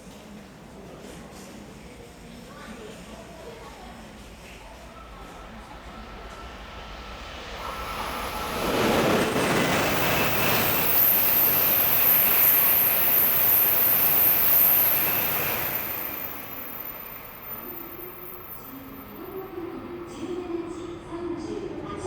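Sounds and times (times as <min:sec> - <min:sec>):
train passing at high speed: 0:03.2 - 0:22.0
thin high whine: 0:05.8 - 0:19.9.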